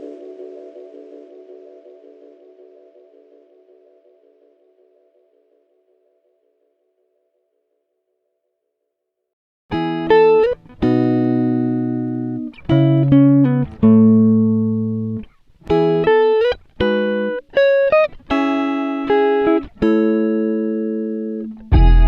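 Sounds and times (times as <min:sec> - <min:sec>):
plucked guitar music: 0:09.7 - 0:22.0.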